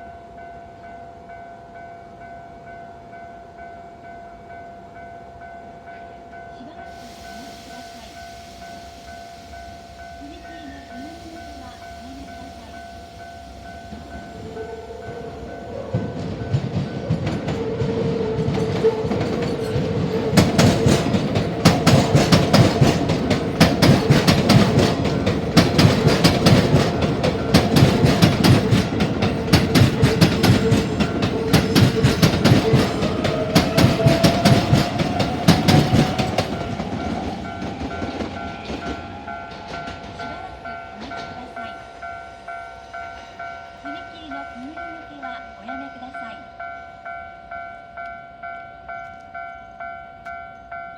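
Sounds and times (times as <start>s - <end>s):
level crossing warning bell: 0.0s - 50.9s
steady train whine: 0.0s - 50.9s
train wheels clattering over joints: 11.0s - 41.8s.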